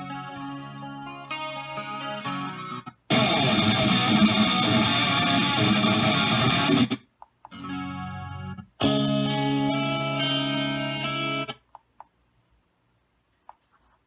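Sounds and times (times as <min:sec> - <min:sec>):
guitar music through small speaker: 0:00.0 - 0:07.0, 0:07.6 - 0:11.6.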